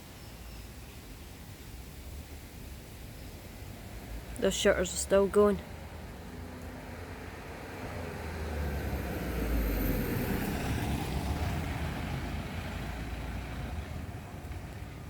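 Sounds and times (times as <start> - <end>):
vehicle passing by: 5.2 - 15.0.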